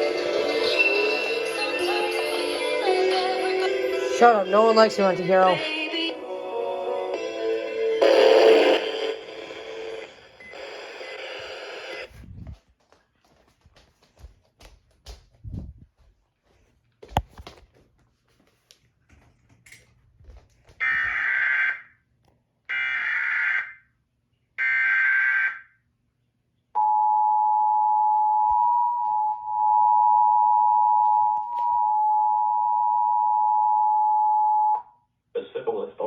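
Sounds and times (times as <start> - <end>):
two-tone attention signal: 8.0 - 11.6
digital data tone bursts: 8.0 - 12.1.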